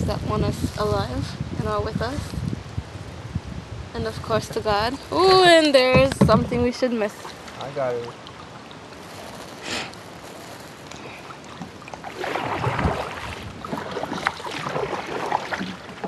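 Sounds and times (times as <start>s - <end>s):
water washing along hull: 0.0s - 16.0s
paddle strokes splashing: 5.3s - 16.0s.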